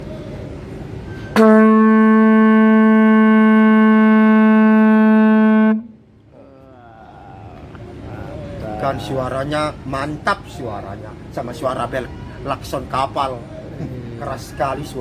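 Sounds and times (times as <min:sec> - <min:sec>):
conch shell blown: 0:01.1 - 0:06.0.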